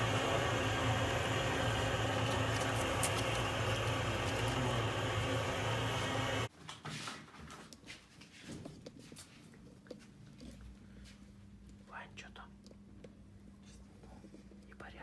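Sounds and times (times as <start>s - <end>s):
low motor hum: 0.0s - 6.5s.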